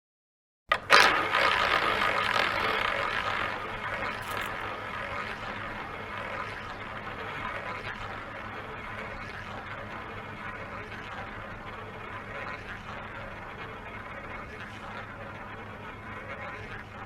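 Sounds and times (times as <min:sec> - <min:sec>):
roulette ball rolling whir: 0:00.7 - 0:16.7.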